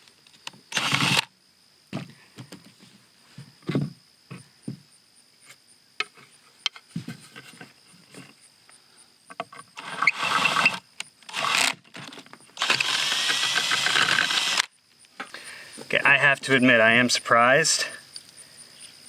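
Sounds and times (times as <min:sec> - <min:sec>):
power drill boring through tile: 0:00.7 - 0:01.3, 0:09.8 - 0:11.8, 0:12.6 - 0:14.7
small knocks and scrapes: 0:05.4 - 0:08.4.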